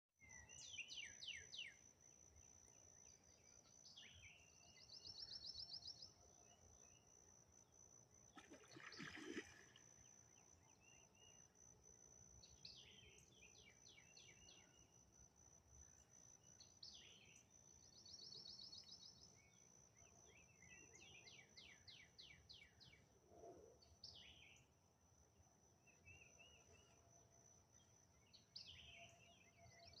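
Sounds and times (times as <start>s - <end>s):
big splash in water: 8.4s - 9.8s.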